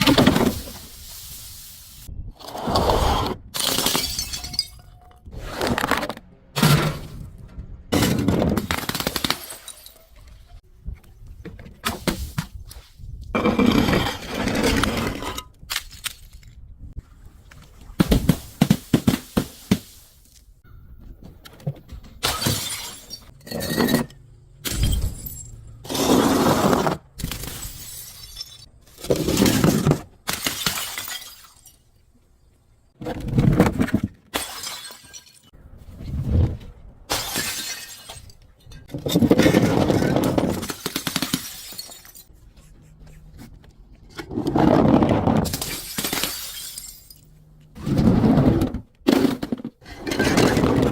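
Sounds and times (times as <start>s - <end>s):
glass bottles shattering: 3.6s - 5.2s, 8.0s - 10.4s, 22.2s - 26.0s, 27.2s - 31.9s, 34.3s - 35.6s, 37.1s - 42.3s, 45.4s - 47.4s.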